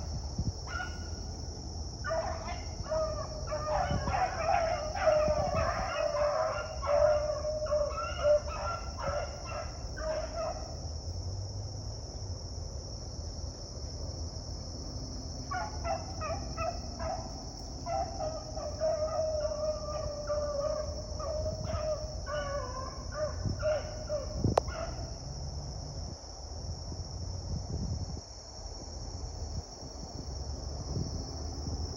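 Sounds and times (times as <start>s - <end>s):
high insect drone: 0.0s - 31.9s
dogs baying and barking: 0.7s - 1.2s, 2.0s - 10.8s, 15.4s - 25.1s.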